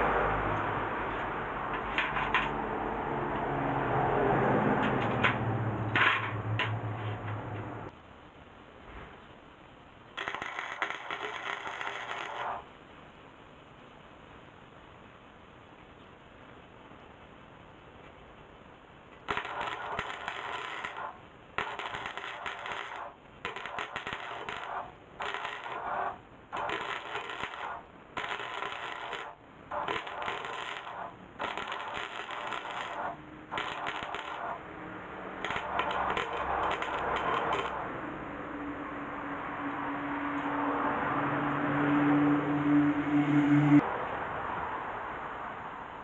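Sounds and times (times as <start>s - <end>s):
welder arc crackling: 10.2s - 12.7s, 19.1s - 38.4s.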